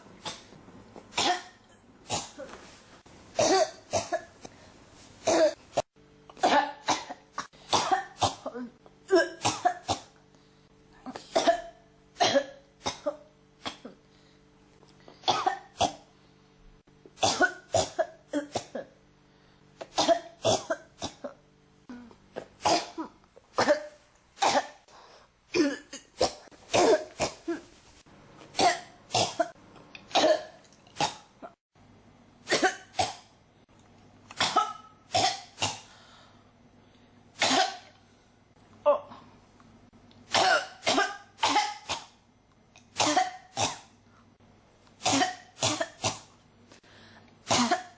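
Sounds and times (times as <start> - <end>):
person coughing: 1.1 - 2.7, 3.4 - 4.4, 5.2 - 5.6, 6.4 - 10.2, 11.0 - 14.0, 15.2 - 16.1, 17.2 - 19.0, 19.8 - 24.9, 25.5 - 27.8, 28.5 - 31.6, 32.5 - 33.3, 34.4 - 36.0, 37.4 - 38.0, 40.3 - 42.2, 43.0 - 43.9, 45.0 - 46.3, 47.4 - 47.9.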